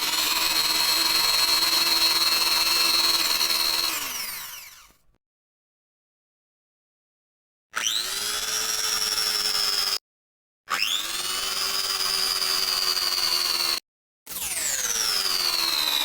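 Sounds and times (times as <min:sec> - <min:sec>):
electric blender motor whining: 0:00.0 - 0:05.1, 0:07.8 - 0:10.0, 0:10.7 - 0:16.0.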